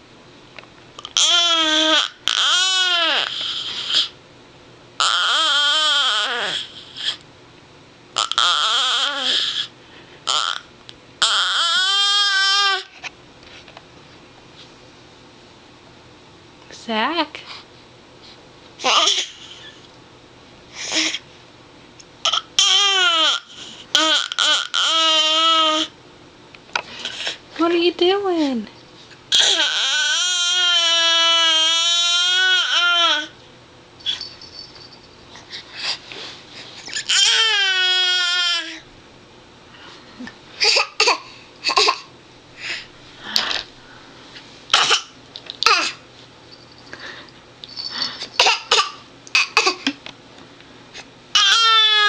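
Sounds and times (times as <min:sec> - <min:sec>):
baby crying: 0:01.1 - 0:04.1, 0:05.0 - 0:07.2, 0:08.2 - 0:09.7, 0:10.3 - 0:12.9, 0:18.8 - 0:19.7, 0:22.3 - 0:25.9, 0:29.3 - 0:33.3, 0:37.0 - 0:38.8, 0:51.3 - 0:52.0
baby vocalizing loudly: 0:08.2 - 0:09.7.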